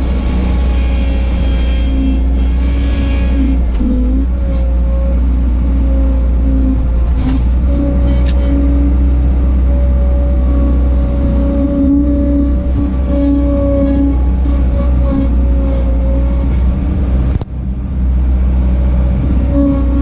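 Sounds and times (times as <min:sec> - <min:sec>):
skid steer engine drone: 0:00.0 - 0:20.0
wavering higher tone: 0:07.6 - 0:16.4.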